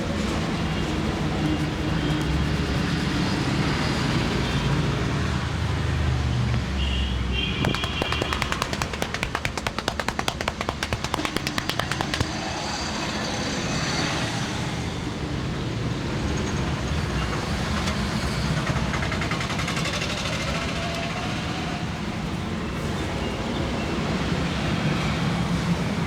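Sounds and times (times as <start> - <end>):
road traffic rumble: 0.0 - 26.0
sharp taps: 7.6 - 12.5.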